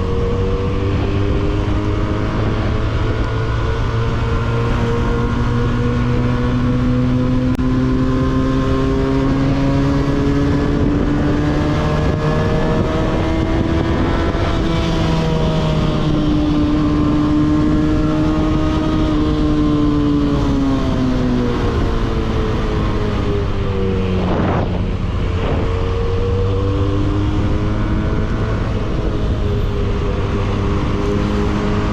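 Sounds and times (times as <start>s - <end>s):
motorcycle engine: 0.0s - 31.9s
wind rush: 8.8s - 31.9s.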